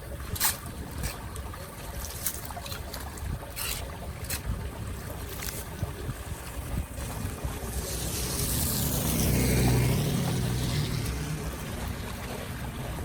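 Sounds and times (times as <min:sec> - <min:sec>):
rushing water: 0:00.0 - 0:13.0
motor vehicle passing by: 0:07.5 - 0:13.0.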